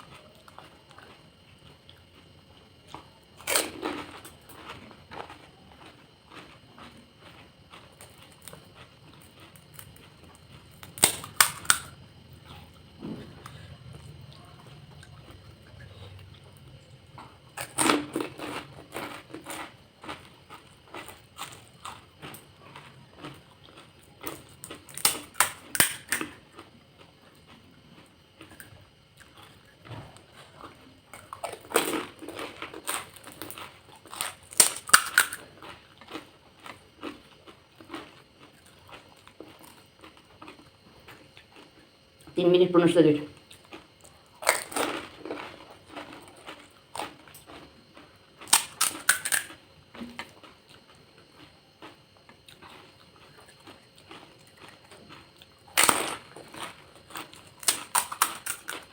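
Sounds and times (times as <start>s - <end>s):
chewing: 0.0s - 41.8s, 43.4s - 58.9s
crisp shells crunching: 10.7s - 11.9s, 31.2s - 36.2s, 44.4s - 47.6s, 48.4s - 49.6s, 54.1s - 58.9s.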